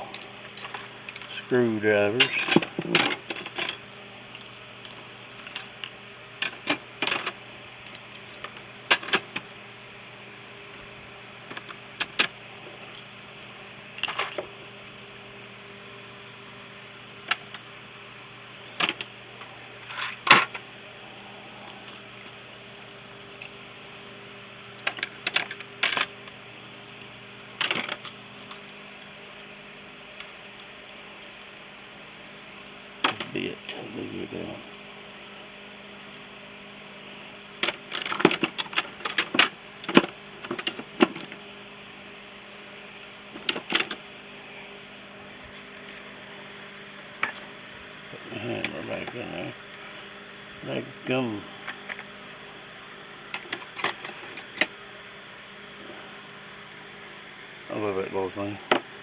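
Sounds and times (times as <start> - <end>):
faint steady hum: 0.0 - 59.0
metal hand tools clinking: 2.2 - 3.8.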